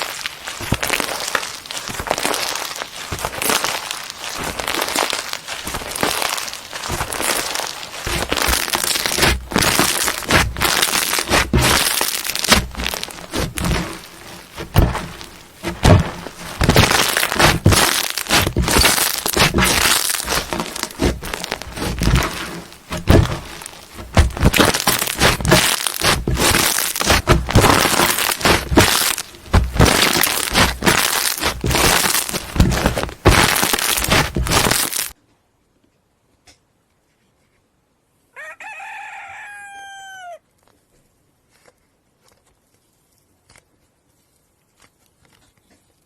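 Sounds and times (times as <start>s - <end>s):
crunchy slime crackling: 0.0s - 35.2s.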